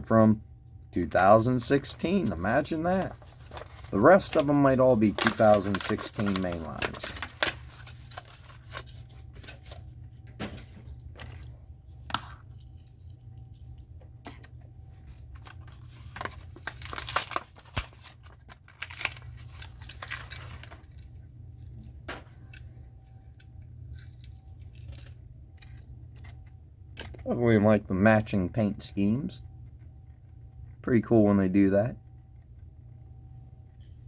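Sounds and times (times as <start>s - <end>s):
steady low hum: 0.0s - 34.0s
plastic crinkling: 1.7s - 21.2s
card tearing: 2.6s - 9.9s, 15.4s - 21.0s.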